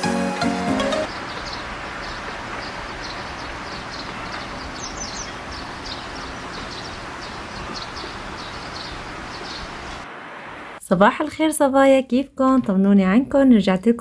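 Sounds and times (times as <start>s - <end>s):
small bird chirping: 1.1s - 10.0s.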